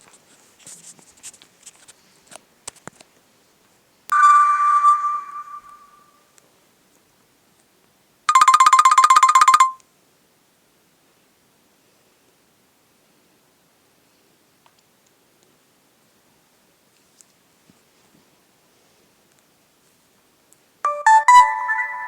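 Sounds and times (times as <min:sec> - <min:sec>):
bell-like phone chime: 0:04.1 - 0:06.1, 0:08.3 - 0:09.8, 0:20.9 - 0:22.0
fast trill of beeps: 0:04.1 - 0:06.1, 0:08.3 - 0:09.8, 0:20.9 - 0:22.0.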